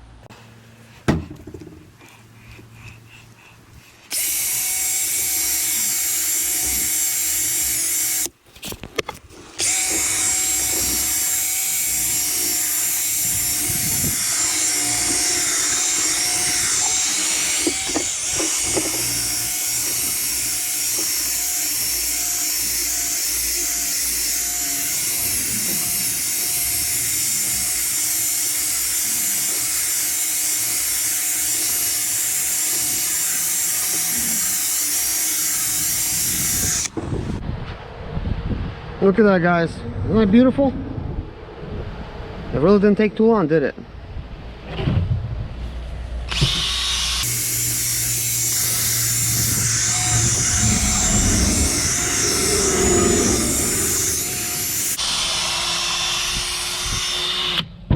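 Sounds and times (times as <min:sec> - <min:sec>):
electric drill polishing whine: 0:04.1 - 0:08.4, 0:09.3 - 0:37.4, 0:46.3 - 0:57.7.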